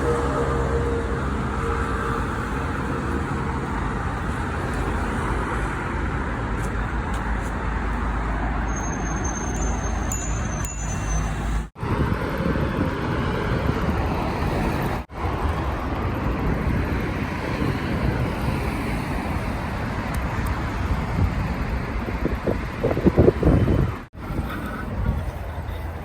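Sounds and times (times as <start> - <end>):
road traffic noise: 0.0 - 26.0
wind blowing on microphone: 10.6 - 26.0.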